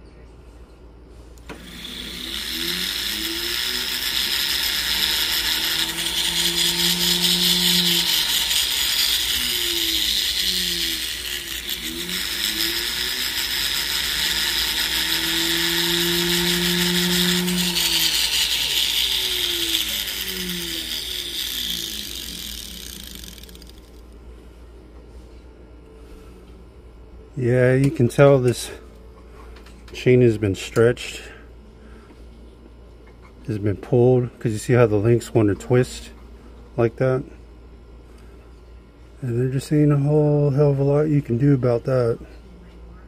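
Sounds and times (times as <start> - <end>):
rotary tool motor: 1.4 - 24.1
rasping hiss on metal: 1.7 - 23.6.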